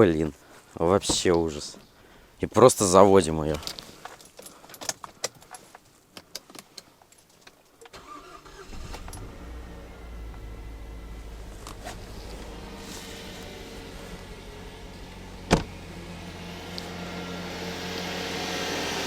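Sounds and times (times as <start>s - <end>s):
engine cranking: 7.9s - 17.0s
car engine idling: 8.0s - 19.0s.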